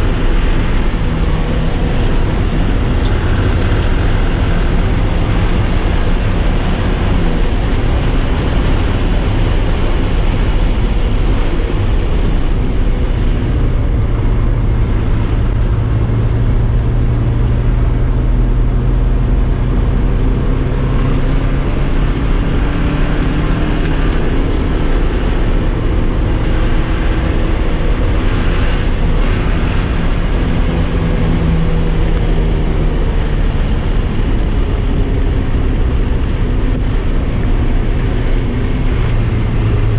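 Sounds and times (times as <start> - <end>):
car engine running hard: 0.0 - 39.9
wind and road noise: 0.0 - 39.9.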